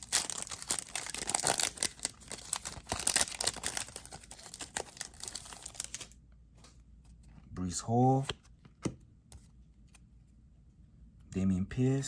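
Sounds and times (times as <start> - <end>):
wrapper crinkling and tearing: 0.0 - 6.2.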